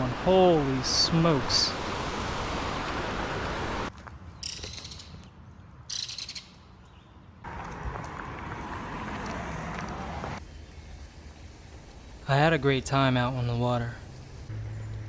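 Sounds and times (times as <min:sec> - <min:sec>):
stream water rushing: 0:00.0 - 0:03.9.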